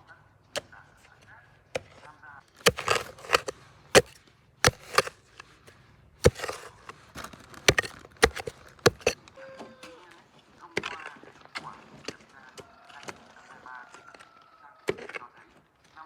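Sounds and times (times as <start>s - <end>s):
tool striking wood: 2.6s - 5.4s, 6.2s - 6.9s, 7.6s - 9.2s.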